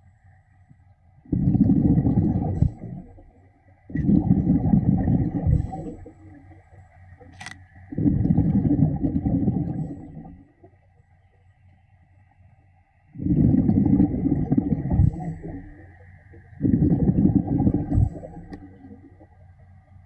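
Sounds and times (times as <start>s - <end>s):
underwater bubbles rushing: 1.3s - 7.3s, 7.9s - 10.7s, 13.2s - 19.4s
sharp click: 7.3s - 7.6s.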